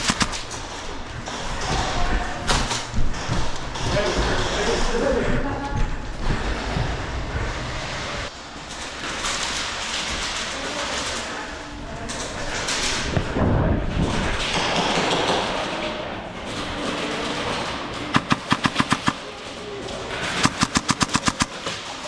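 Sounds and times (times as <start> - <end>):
airsoft gun shots: 0.0 - 0.4, 18.1 - 19.3, 20.3 - 21.7
rumbling wind: 11.8 - 15.5.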